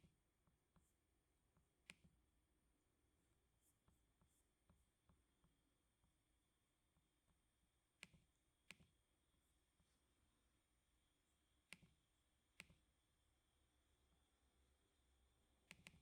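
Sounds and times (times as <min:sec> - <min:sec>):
keyboard clicks: 0:15.7 - 0:16.0.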